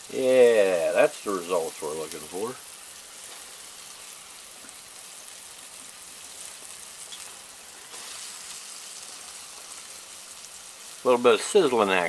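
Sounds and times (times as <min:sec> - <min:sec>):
meat sizzling in hot oil: 0:00.0 - 0:12.0.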